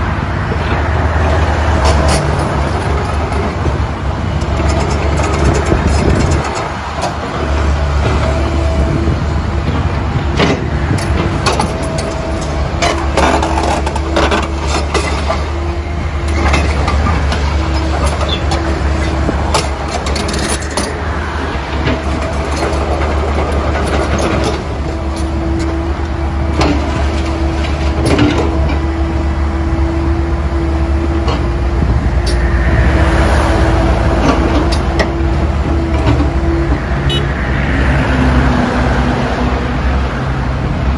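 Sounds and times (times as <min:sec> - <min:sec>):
digging machine engine running: 0:00.5 - 0:37.3
machine knocks and clanks: 0:09.6 - 0:15.6.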